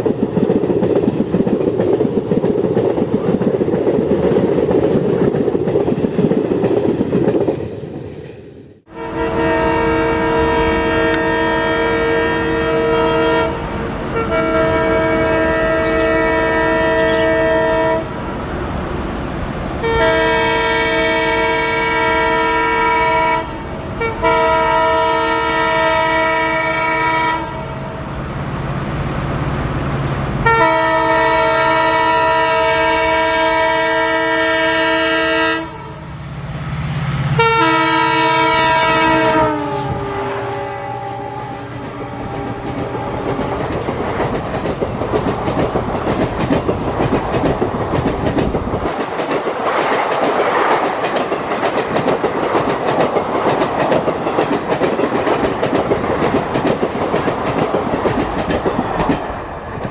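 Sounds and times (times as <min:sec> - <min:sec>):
train wheels clacking over rail joints: 0:00.0 - 0:08.6, 0:41.4 - 0:59.9
locomotive horn blasts: 0:08.9 - 0:18.1, 0:19.8 - 0:28.0, 0:30.4 - 0:36.1, 0:37.4 - 0:43.4.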